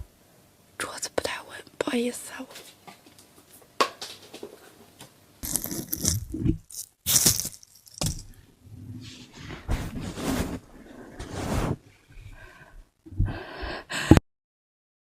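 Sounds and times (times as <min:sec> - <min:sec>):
drawn-in breath: 0:12.2 - 0:14.2.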